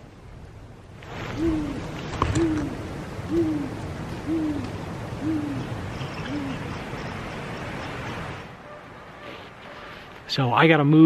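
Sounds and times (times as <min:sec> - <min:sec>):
owl hooting: 0:01.3 - 0:06.7.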